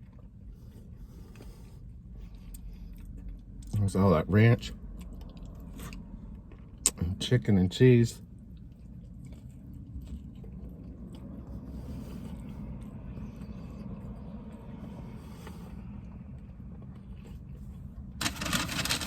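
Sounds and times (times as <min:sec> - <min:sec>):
person chewing: 0:05.0 - 0:07.0, 0:08.4 - 0:17.9
loud rustling: 0:18.2 - 0:19.0.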